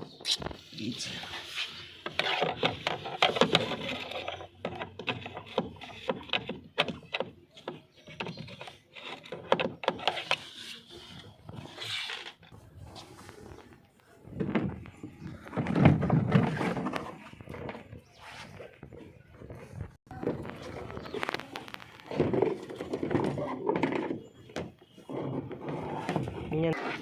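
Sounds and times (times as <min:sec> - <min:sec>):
scraping and rubbing on casing: 0:01.2 - 0:13.8.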